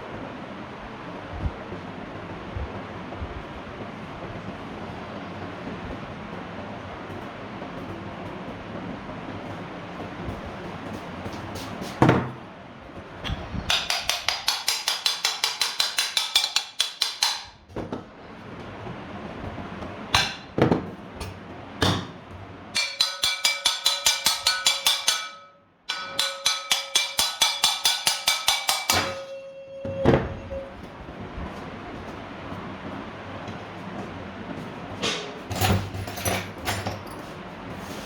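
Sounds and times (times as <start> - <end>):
hammer tapping on metal: 13.3 - 17.6, 20.1 - 20.5, 22.8 - 29.4
faint ringing: 28.8 - 31.0.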